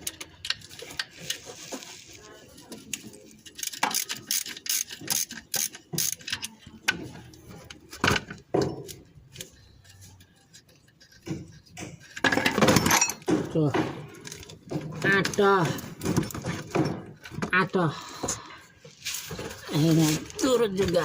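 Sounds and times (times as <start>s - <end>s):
ratchet wrench clicking: 3.5s - 6.6s.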